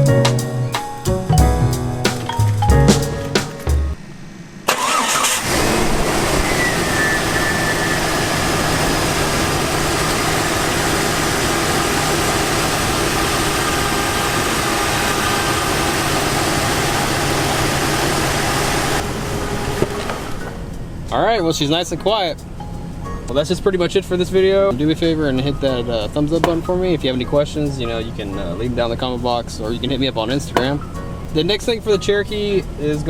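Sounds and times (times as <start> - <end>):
car engine starting and idling: 4.6 - 7.2, 8.0 - 20.6.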